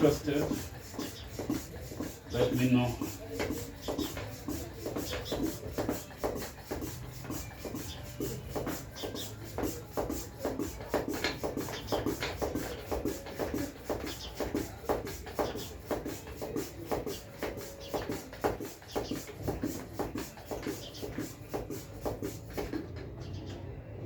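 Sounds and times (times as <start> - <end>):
hand bicycle pump strokes: 0.0 - 23.1.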